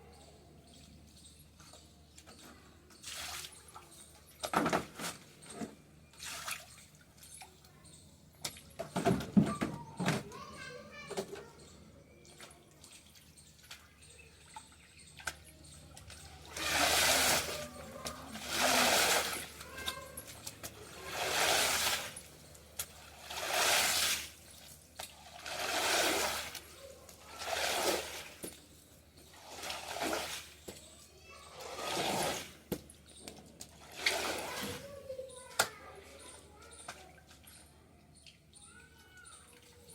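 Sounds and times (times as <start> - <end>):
water splashing swishes: 16.4 - 19.8, 20.4 - 22.3, 23.0 - 28.4.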